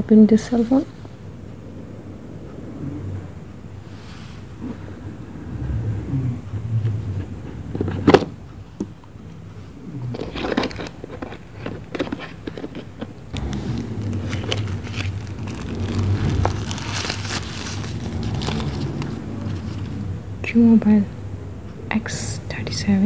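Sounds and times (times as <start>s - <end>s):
low background rumble: 0.0s - 23.0s
small clicks and rustles: 10.0s - 20.0s.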